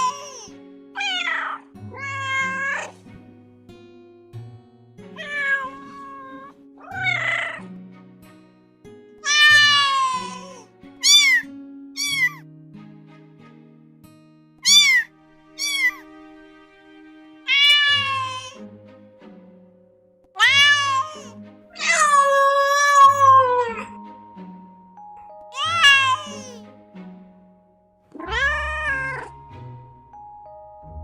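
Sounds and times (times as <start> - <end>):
cat meowing: 0.0 - 3.0, 5.2 - 7.8, 9.2 - 12.4, 14.6 - 16.1, 17.4 - 18.6, 20.4 - 24.0, 25.5 - 26.6, 28.1 - 29.5
soft background music: 0.0 - 31.0.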